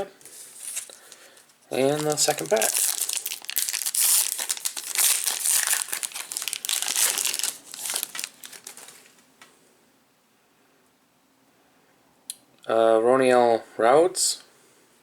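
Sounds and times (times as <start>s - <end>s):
card pack wrapper crinkling: 0.2s - 9.2s.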